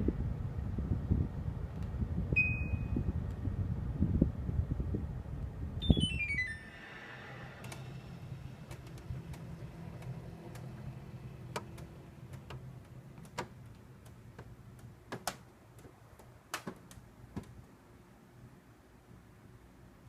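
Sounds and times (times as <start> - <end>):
air conditioner humming: 0.0 - 20.0
clicks and ticks from unit: 8.7 - 17.6.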